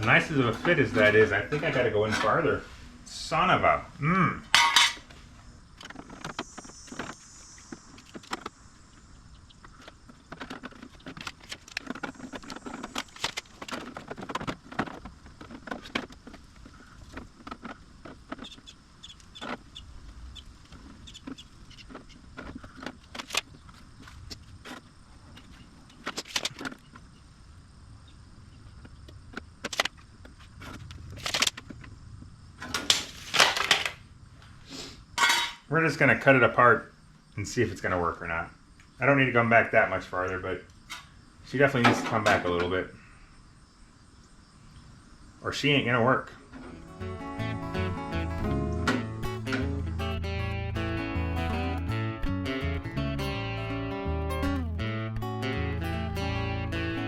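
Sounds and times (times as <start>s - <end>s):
metal parts and tools clinking: 0.0s - 2.6s, 4.4s - 5.1s, 35.2s - 35.7s
loud clunks: 4.4s - 5.1s.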